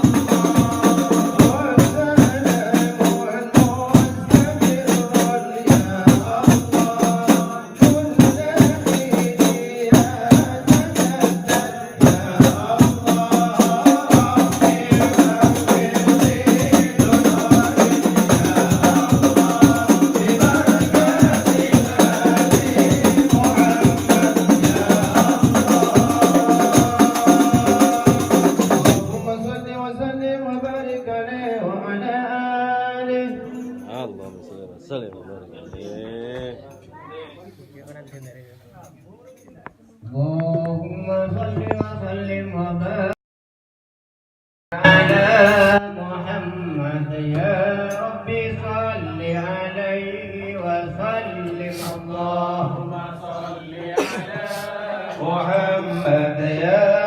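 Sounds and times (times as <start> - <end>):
frame drums beating: 0.0 - 29.4
group singing devotional song: 0.0 - 34.9, 44.8 - 57.0.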